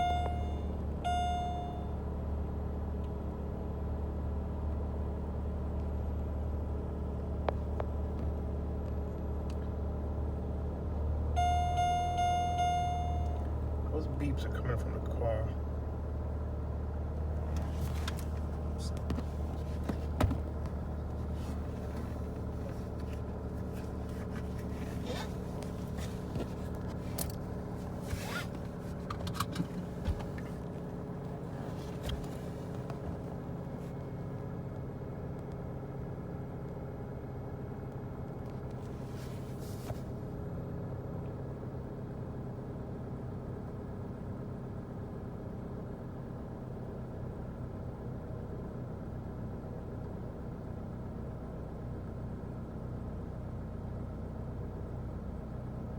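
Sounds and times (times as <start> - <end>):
car engine idling: 0.0 - 3.1, 4.6 - 34.5
handling clicks and rustles: 17.3 - 34.0.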